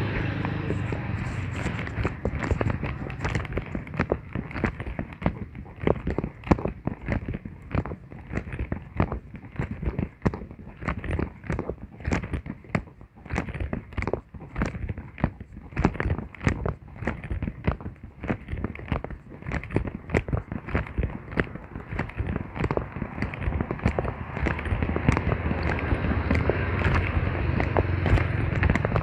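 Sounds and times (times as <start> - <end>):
footsteps knocking: 0.0 - 10.4, 20.2 - 29.0.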